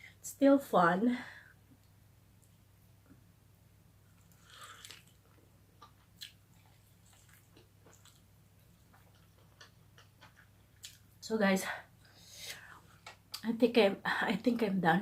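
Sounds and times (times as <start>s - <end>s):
chewing on chicken bones: 4.3s - 11.0s.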